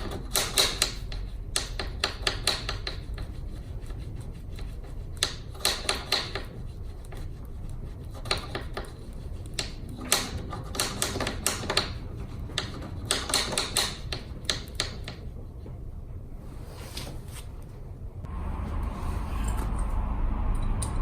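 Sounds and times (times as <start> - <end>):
metal parts clicking and tapping: 0.0 - 3.3, 5.2 - 6.5, 8.2 - 15.3.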